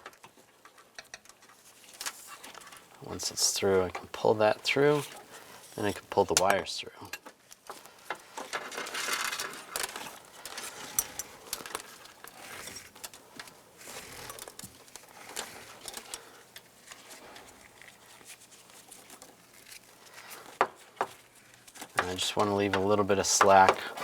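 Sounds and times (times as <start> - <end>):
small clicks and knocks: 0.0 - 2.8
wires rubbing and rustling: 0.0 - 6.7, 7.5 - 24.0.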